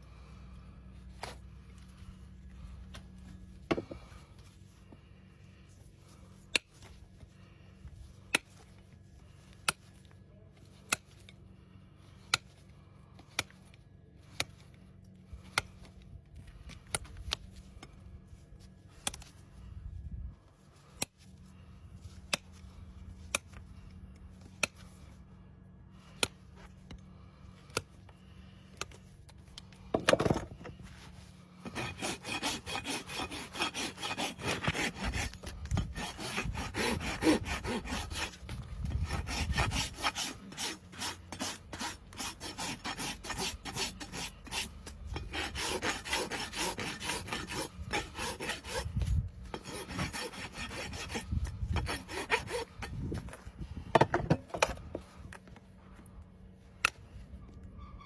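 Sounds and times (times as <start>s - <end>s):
steady low hum: 0.0s - 58.0s
hoof rasp filing: 30.0s - 55.2s.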